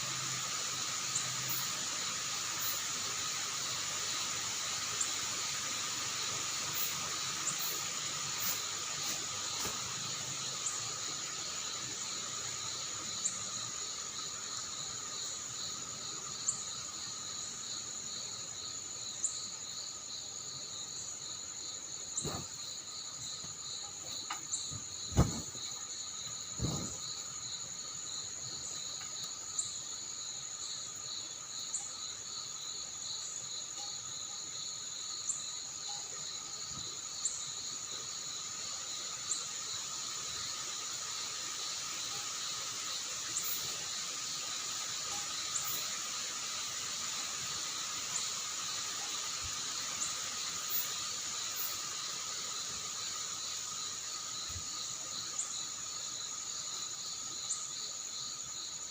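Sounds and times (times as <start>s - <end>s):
faint hiss: 0.0s - 58.9s
insects trilling: 0.0s - 58.9s
sharp knocks: 25.1s - 25.6s.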